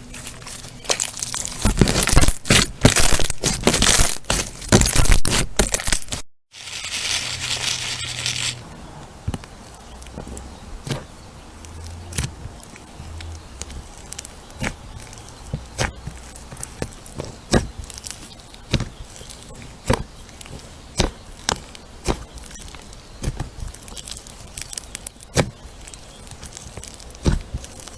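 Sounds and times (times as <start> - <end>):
crunchy slime crackling and popping: 0.0 - 8.6, 9.9 - 27.9.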